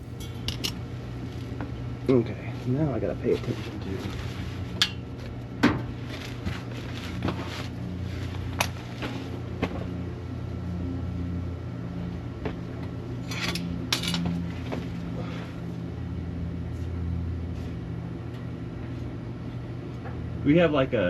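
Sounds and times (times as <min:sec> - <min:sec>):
steady low hum: 0:00.0 - 0:21.0
metal pipes clinking and scraping: 0:13.2 - 0:14.3.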